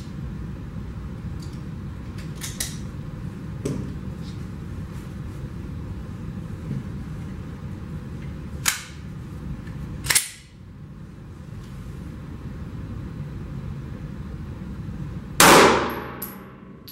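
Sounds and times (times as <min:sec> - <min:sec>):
gunshots: 0:15.4 - 0:16.2.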